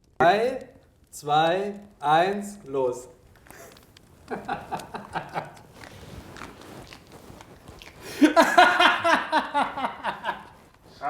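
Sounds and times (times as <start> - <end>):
person speaking: 0.2 - 3.2
people chewing hot dogs: 3.2 - 11.0.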